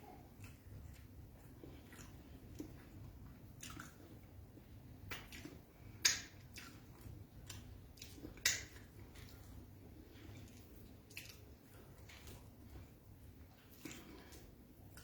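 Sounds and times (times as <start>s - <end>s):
person chewing food: 0.0s - 15.0s
soft mouth smacks: 5.1s - 9.6s.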